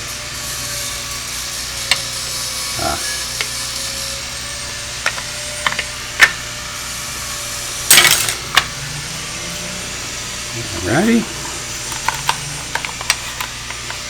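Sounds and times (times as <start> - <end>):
plastic parts clicking: 5.1 - 6.4, 11.8 - 14.0.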